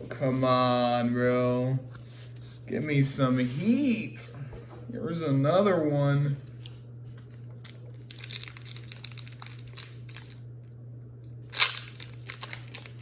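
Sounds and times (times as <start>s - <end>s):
foil wrapper crinkling and tearing: 7.7s - 10.4s, 11.4s - 13.0s.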